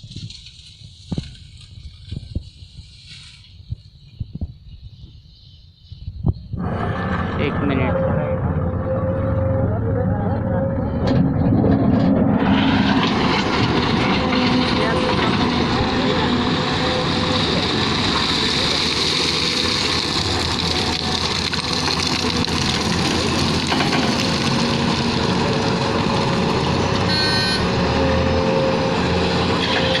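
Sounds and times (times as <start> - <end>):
backhoe diesel engine running: 6.6 - 30.0
brief high-pitched tone: 27.1 - 27.7.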